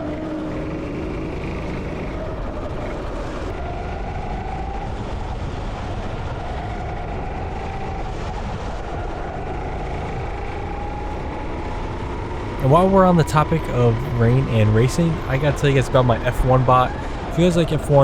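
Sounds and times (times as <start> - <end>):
go-kart engine running: 0.0 - 4.8, 9.2 - 18.0.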